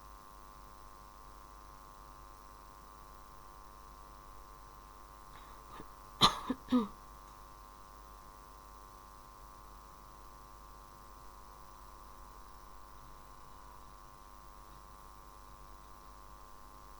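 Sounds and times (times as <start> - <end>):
faint electrical hum: 0.0 - 16.9
person coughing: 5.7 - 6.9.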